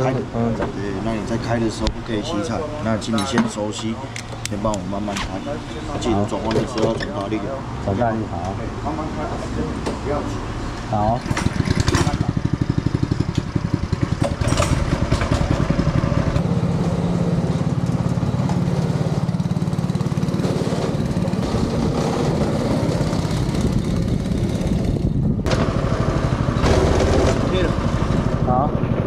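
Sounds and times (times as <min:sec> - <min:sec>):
go-kart engine running: 0:11.0 - 0:29.0.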